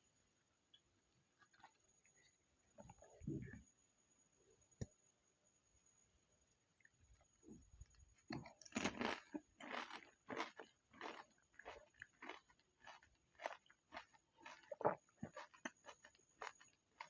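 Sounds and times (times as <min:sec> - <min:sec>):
crisp shells crunched and chewed: 0:08.3 - 0:17.0.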